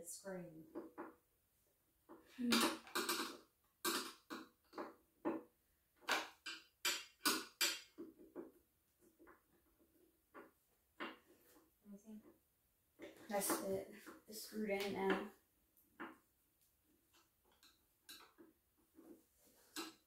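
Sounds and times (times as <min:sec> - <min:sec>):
clacks and knocks of handled parts: 0:02.1 - 0:12.4, 0:17.0 - 0:20.0.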